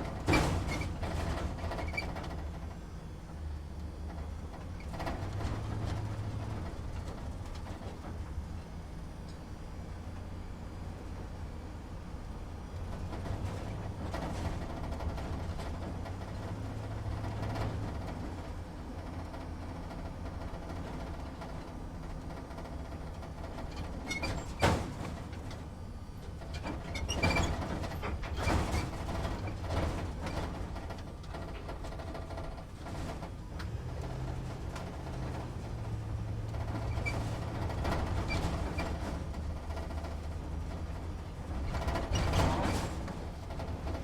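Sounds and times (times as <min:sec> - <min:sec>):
truck engine at low revs: 0:00.0 - 0:44.0
cab rattles and knocks: 0:26.5 - 0:44.0.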